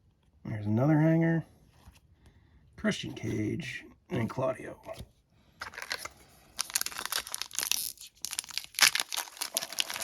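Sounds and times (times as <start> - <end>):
foil wrapper crinkling and tearing: 5.6 - 10.0.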